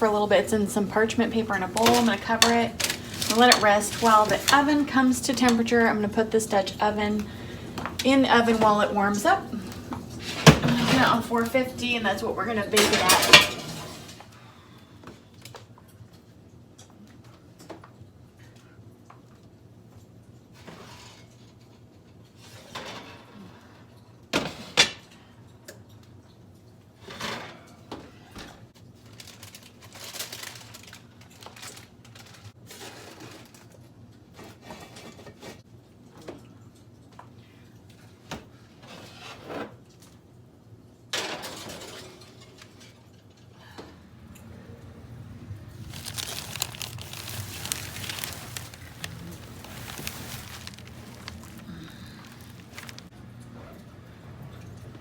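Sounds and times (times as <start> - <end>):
rustling: 1.5 - 5.4, 45.2 - 53.1.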